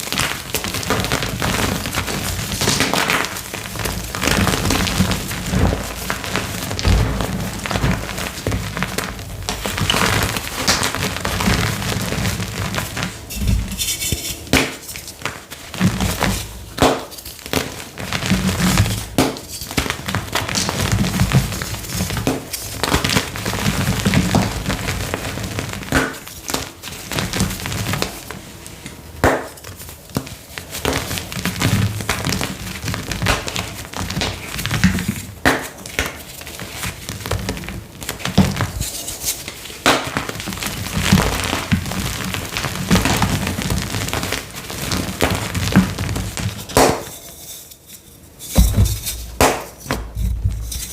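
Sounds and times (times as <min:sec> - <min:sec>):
chalk crushed by hand: 0:44.2 - 0:50.9.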